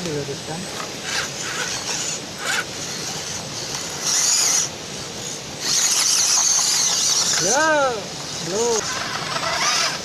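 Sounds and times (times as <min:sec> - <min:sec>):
electric motor and gearbox whining: 0:00.0 - 0:10.0.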